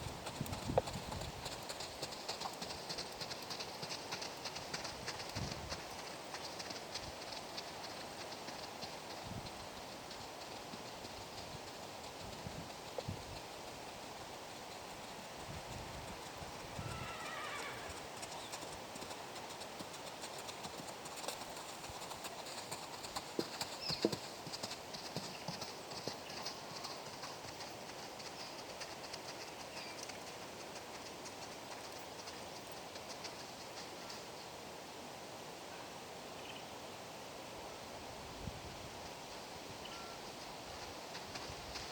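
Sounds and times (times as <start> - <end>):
wind noise: 0.0 - 1.6, 4.8 - 6.0, 9.1 - 9.8, 11.3 - 13.5, 15.3 - 18.1, 38.2 - 41.9
horse hooves clip-clopping: 0.0 - 34.8, 38.9 - 41.9.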